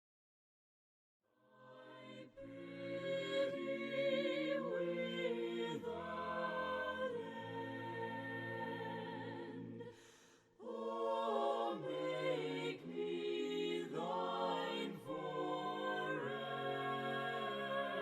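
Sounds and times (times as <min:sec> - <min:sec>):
choir singing a hymn a cappella: 0:01.5 - 0:18.0.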